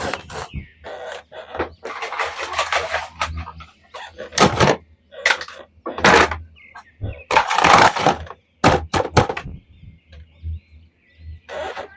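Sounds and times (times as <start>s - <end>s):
plastic toy packaging rustling: 1.8s - 6.3s, 7.3s - 8.4s.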